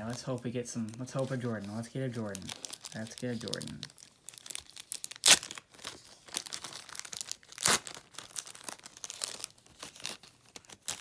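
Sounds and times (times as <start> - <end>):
wrapper crinkling and tearing: 0.0 - 11.0.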